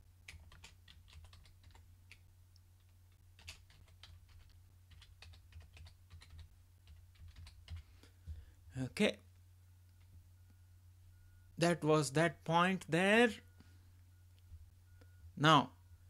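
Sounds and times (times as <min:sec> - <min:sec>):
low electrical hum: 0:00.0 - 0:16.0
typing on computer keyboard: 0:00.2 - 0:02.2, 0:02.8 - 0:07.9.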